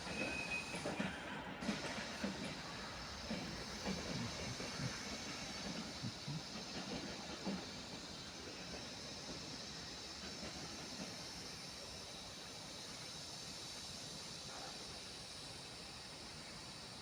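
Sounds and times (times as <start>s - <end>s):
train wheels knocking on rails: 0.0s - 13.0s.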